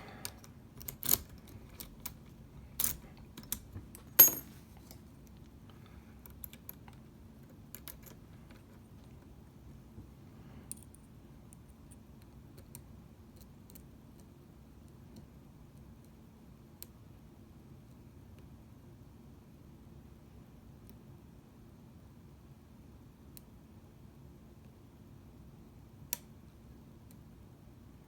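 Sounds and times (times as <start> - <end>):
lock pick metal clicks: 0.2 - 2.2, 2.8 - 4.4.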